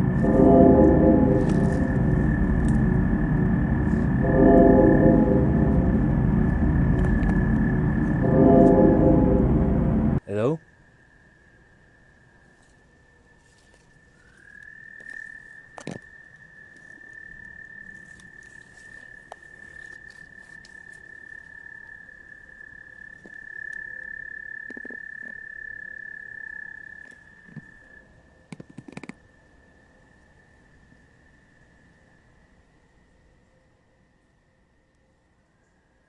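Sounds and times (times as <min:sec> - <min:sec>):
frog trilling: 0:21.2 - 0:28.0.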